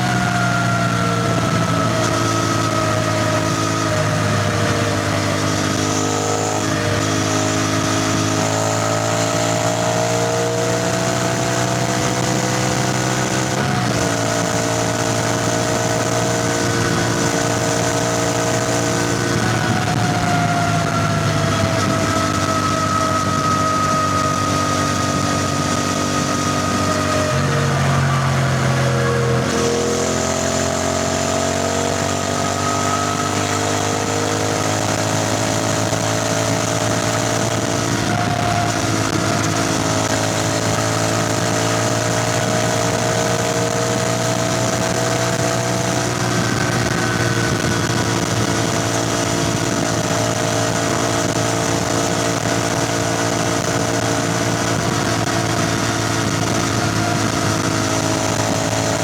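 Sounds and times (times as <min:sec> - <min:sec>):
motorcycle engine and exhaust: 0:00.0 - 0:59.0
wind and road noise: 0:00.0 - 0:59.0.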